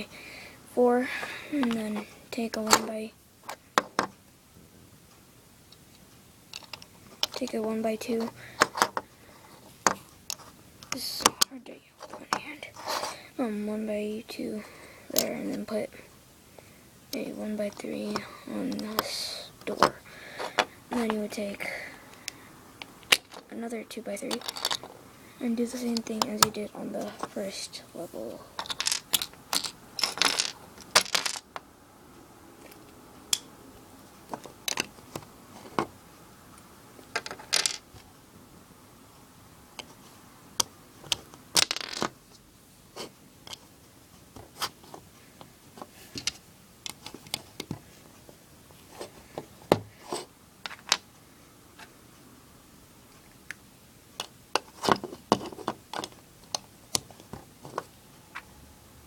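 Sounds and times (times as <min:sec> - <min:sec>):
plastic bricks clicking: 0:06.5 - 0:07.5, 0:24.3 - 0:24.9, 0:28.6 - 0:31.6, 0:34.3 - 0:35.9, 0:37.1 - 0:37.8, 0:40.6 - 0:42.1
plastic bricks rattling: 0:24.3 - 0:24.9, 0:28.6 - 0:31.5, 0:37.1 - 0:37.8.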